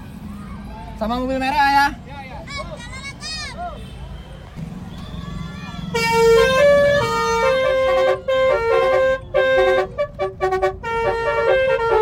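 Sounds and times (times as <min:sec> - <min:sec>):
multi-tone musical horn melody: 0:05.9 - 0:12.0.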